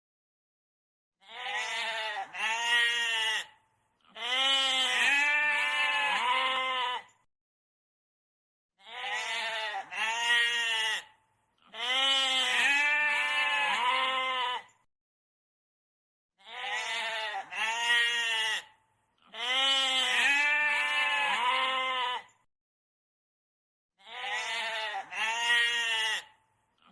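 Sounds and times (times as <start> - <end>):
goat bleating: 1.2 - 7.2, 8.8 - 14.7, 16.4 - 22.4, 24.0 - 26.9.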